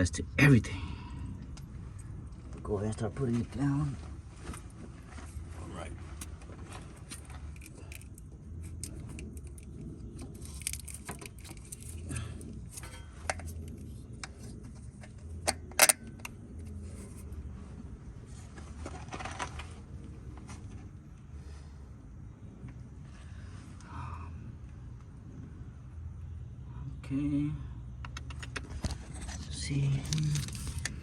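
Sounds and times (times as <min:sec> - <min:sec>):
low steady hum: 0:00.0 - 0:31.0
metal tools clinking: 0:06.9 - 0:14.5.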